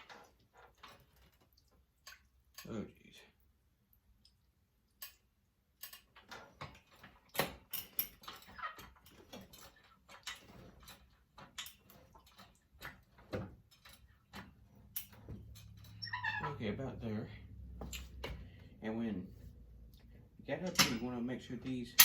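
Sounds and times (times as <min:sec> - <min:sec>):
lift clicking and clanking: 0:20.5 - 0:22.0.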